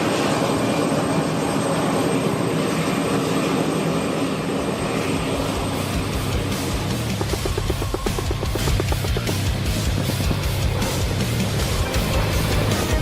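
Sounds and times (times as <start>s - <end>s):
helicopter turbine and rotor noise: 0.0s - 13.0s.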